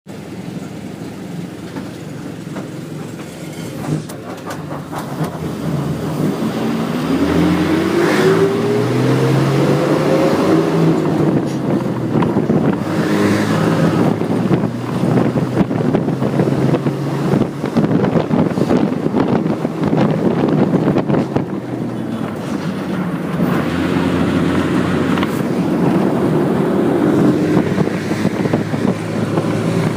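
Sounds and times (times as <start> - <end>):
bus engine accelerating: 0.1 - 29.9
road noise: 0.1 - 29.9
clicks and rattles: 1.7 - 6.1.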